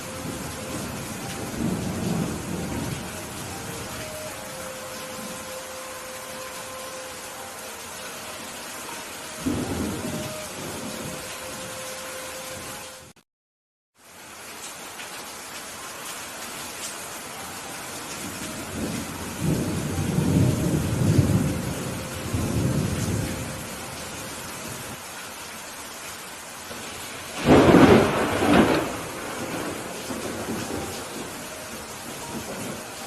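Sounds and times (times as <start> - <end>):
thunder rumbling: 0.0 - 5.6, 9.4 - 11.8, 18.3 - 25.0, 26.7 - 32.9
steady rain falling: 0.0 - 13.2, 14.0 - 33.0
sharp thunderclap: 27.4 - 31.1.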